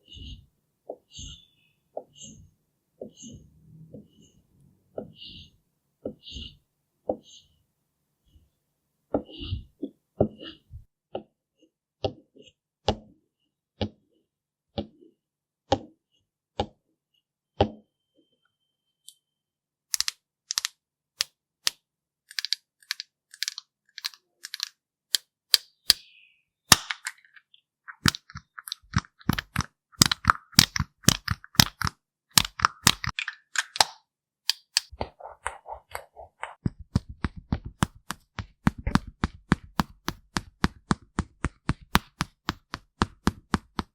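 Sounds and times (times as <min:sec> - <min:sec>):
sharp taps on hard objects: 0:36.9 - 0:43.9.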